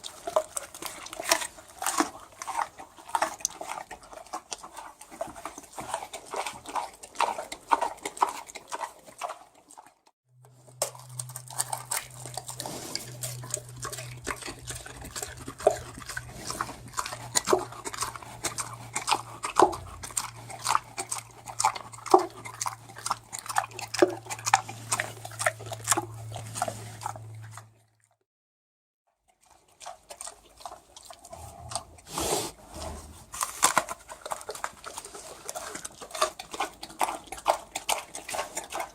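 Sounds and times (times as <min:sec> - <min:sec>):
pig chewing and smacking: 0:00.0 - 0:28.2, 0:29.2 - 0:38.9.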